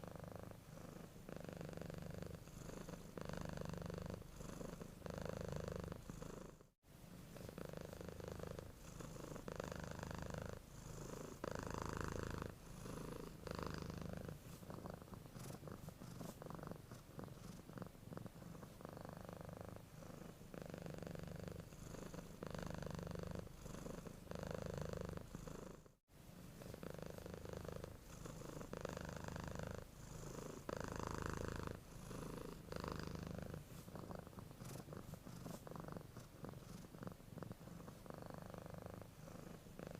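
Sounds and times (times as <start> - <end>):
cat purring: 0.0 - 39.9.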